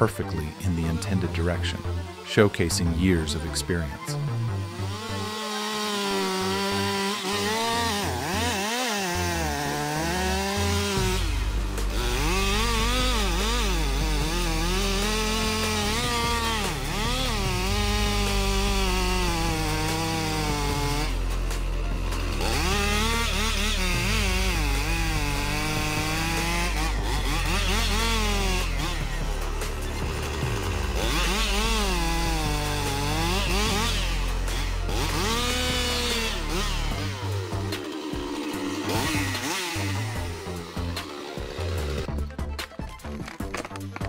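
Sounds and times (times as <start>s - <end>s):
chainsaw revving and cutting wood: 0.0s - 44.0s
deep steady rumble: 10.9s - 19.6s, 23.8s - 42.2s.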